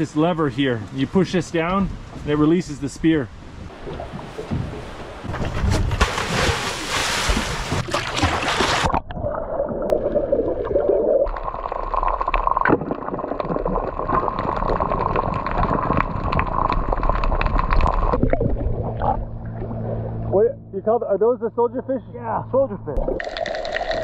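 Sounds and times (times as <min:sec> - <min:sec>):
water splashing: 0:03.7 - 0:20.3
underwater gurgling: 0:07.3 - 0:20.3, 0:23.0 - 0:24.0
underwater crackling clicks: 0:14.1 - 0:19.2.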